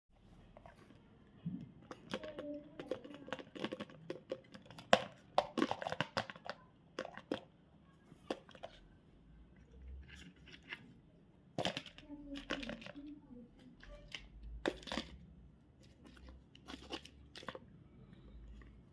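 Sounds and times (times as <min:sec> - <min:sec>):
candy wrapper crinkling and tearing: 0:01.9 - 0:07.5, 0:13.8 - 0:17.6.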